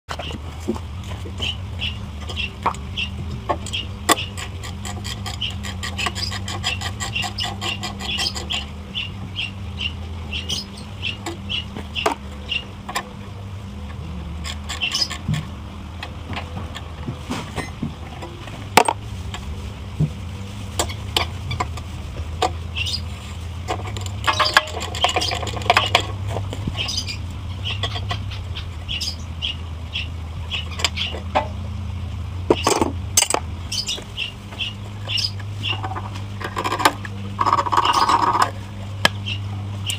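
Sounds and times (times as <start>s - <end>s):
steady low hum: 0.1s - 39.9s
hand tools clicking on metal: 3.5s - 8.7s, 23.6s - 27.0s.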